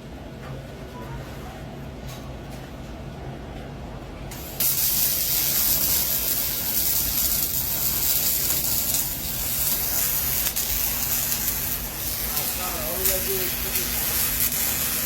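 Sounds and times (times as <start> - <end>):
welding arc hissing: 4.3 - 15.0.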